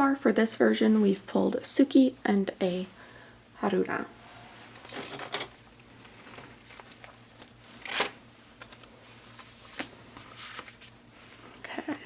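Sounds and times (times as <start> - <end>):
paper and card rustling: 4.8 - 11.0.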